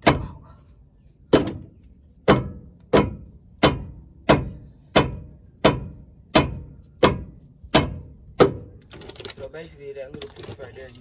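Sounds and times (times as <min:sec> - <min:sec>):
hammer striking metal: 0:02.3 - 0:08.6.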